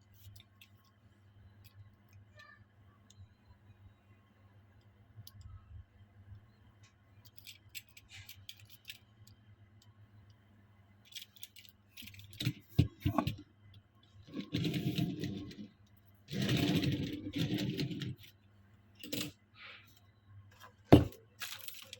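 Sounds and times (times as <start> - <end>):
scraping and rattling: 14.2 - 15.7, 16.3 - 18.3.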